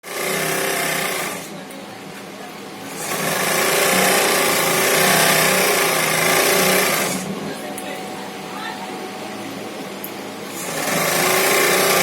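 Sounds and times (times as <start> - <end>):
stitching machine running: 0.0 - 1.6, 2.9 - 7.4, 10.4 - 12.0.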